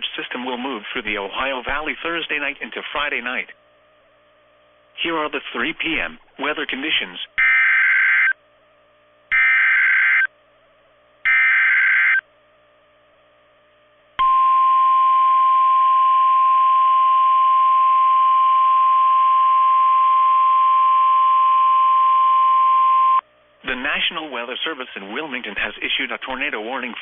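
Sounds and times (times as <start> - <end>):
steady alarm tone: 7.4 - 8.4, 9.3 - 10.3, 11.2 - 12.3.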